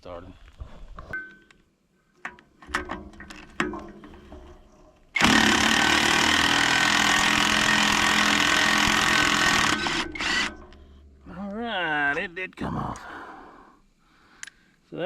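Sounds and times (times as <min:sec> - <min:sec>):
impact wrench hammering: 0:05.2 - 0:10.7.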